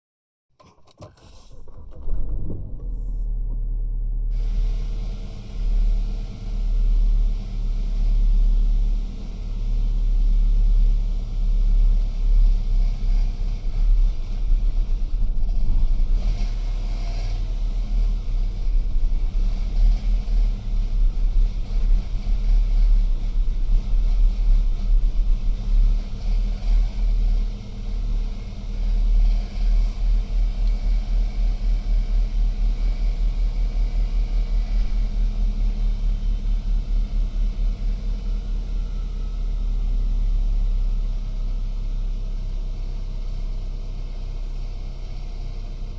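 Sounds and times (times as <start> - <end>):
car engine idling rough: 1.2 - 45.9.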